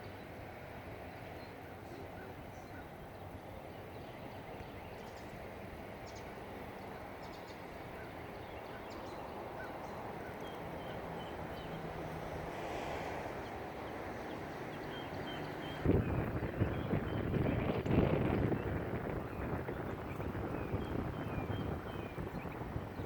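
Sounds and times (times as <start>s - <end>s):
geese calling softly: 1.4s - 5.4s, 6.0s - 12.0s.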